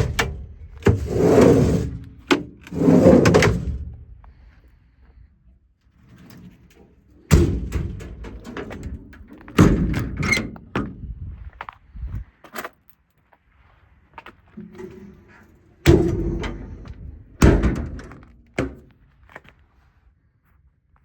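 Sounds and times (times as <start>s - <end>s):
latch and handle clicks: 7.3s - 11.0s.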